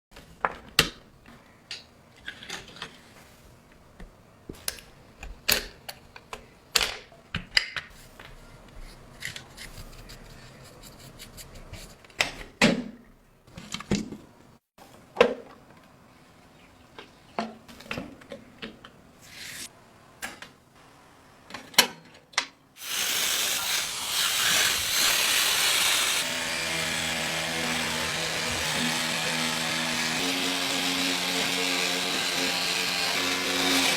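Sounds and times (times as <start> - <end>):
power tool running: 22.8 - 33.9.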